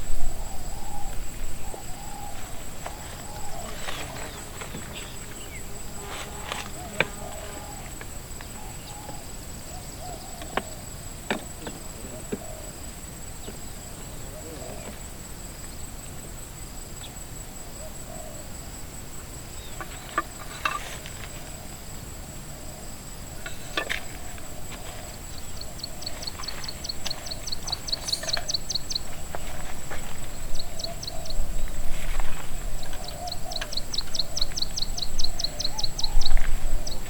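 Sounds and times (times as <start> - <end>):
high insect drone: 0.0 - 37.0
rapid chirping trills: 25.2 - 29.4, 32.7 - 37.0.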